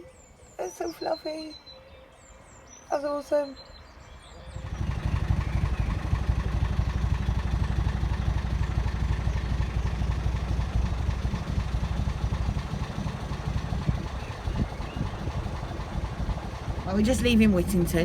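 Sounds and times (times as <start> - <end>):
boat engine chugging: 4.5 - 18.0.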